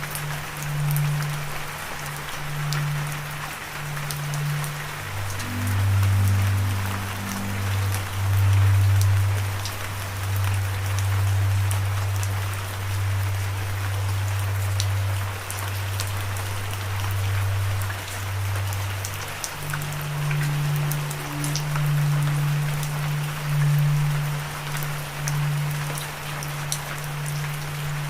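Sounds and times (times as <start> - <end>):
low steady drone: 0.0 - 28.0
steady rain: 0.0 - 28.0.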